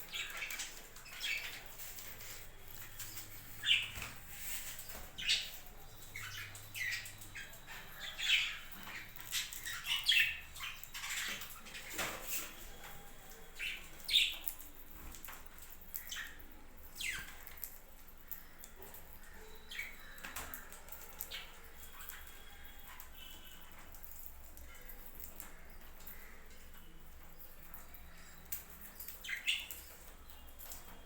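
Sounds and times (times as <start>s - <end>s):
budgerigars chirping and squawking: 0.0s - 14.6s.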